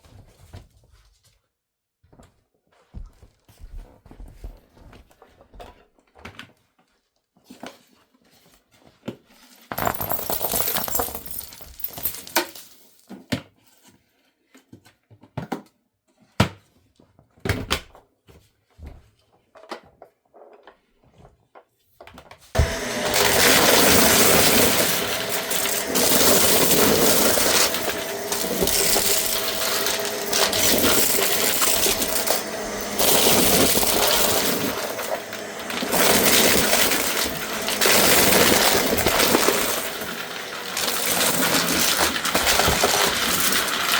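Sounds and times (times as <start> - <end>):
vacuum cleaner running: 9.8 - 12.6, 22.6 - 43.9.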